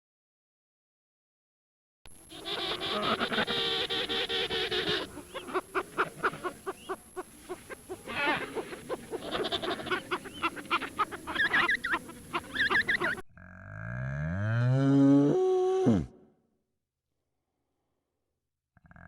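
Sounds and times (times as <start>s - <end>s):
flock of fowl calling: 2.2s - 13.2s
high rising and falling calls: 2.3s - 13.2s.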